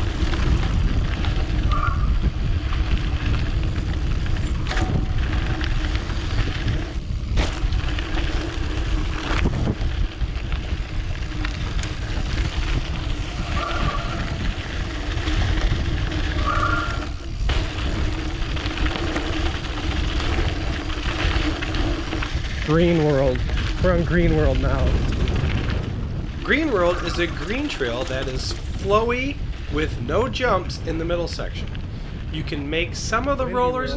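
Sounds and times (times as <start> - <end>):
tyres rumbling on dirt: 0.0 - 25.6, 26.2 - 33.9
wind on microphone: 0.0 - 33.9
bike knocking over bumps: 3.0 - 10.2, 14.4 - 22.5.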